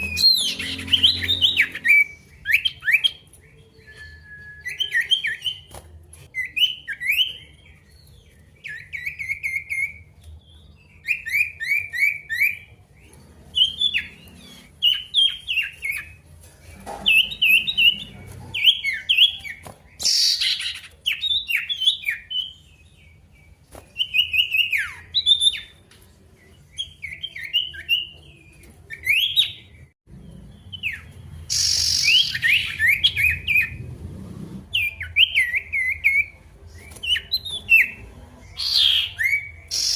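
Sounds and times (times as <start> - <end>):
songbird singing sweeping chirps: 0.0 - 39.9.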